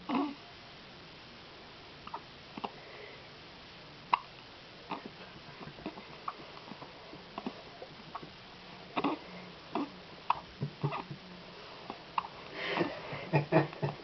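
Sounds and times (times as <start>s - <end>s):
babies hiccupping: 9.0s - 11.2s.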